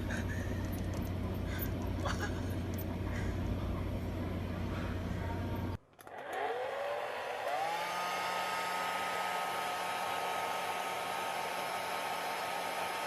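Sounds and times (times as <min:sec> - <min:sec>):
small electric motor whine: 0:06.0 - 0:13.0.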